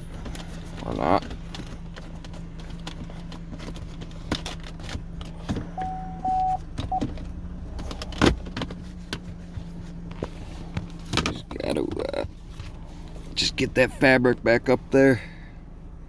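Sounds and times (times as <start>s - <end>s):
short electronic beeps: 5.8s - 7.0s.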